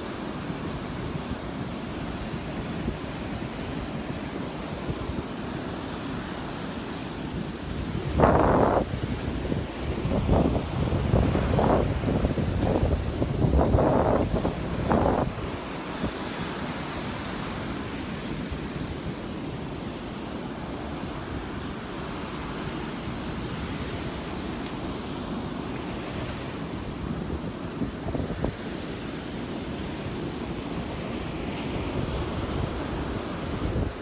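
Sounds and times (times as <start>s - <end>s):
surf washing onto beach: 0.0s - 34.0s
wind buffeting microphone: 7.4s - 16.8s, 25.8s - 29.2s, 29.9s - 34.0s.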